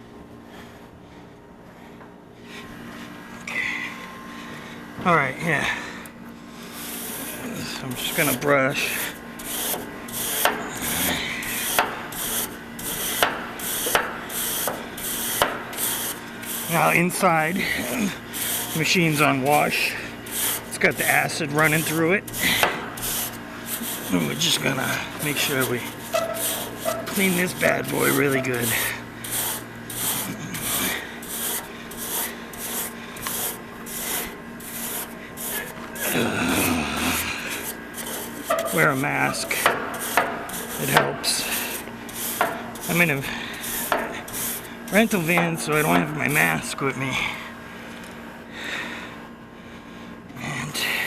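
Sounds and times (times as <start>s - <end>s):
brush scrubbing metal coil fins: 6.6s - 46.8s.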